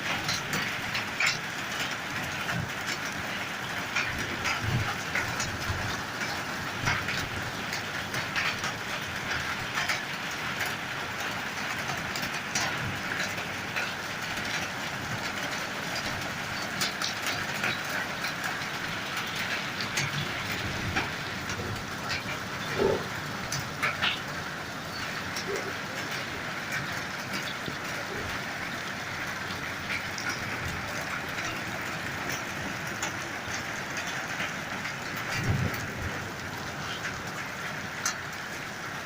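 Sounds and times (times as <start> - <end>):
rain drips and taps: 0.0 - 39.0
steady rain hiss: 0.0 - 39.0.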